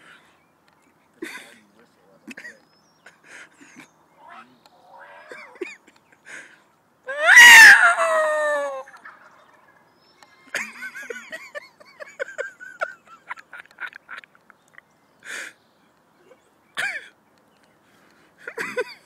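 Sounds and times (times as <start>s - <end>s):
harsh raspy turkey calls: 2.4s - 6.7s, 7.5s - 10.8s
turkey call squeaky yelps: 4.2s - 5.6s, 7.1s - 9.8s.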